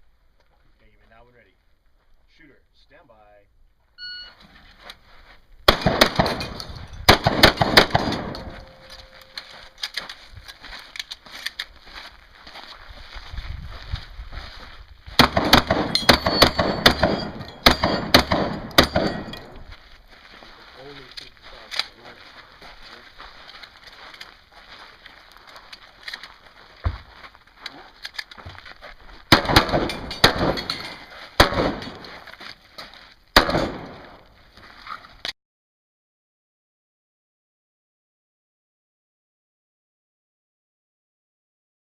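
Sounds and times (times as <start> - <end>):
shotgun blasts with echo: 5.7 - 8.9, 15.2 - 19.5, 29.3 - 30.8, 31.4 - 32.2, 33.4 - 34.2.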